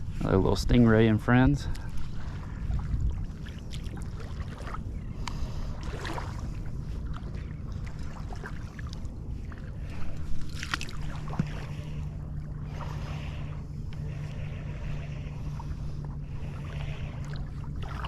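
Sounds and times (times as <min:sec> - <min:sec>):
wind on microphone: 0:00.0 - 0:13.5
boat motor rumbling: 0:00.0 - 0:18.0
steady hum: 0:00.0 - 0:18.0.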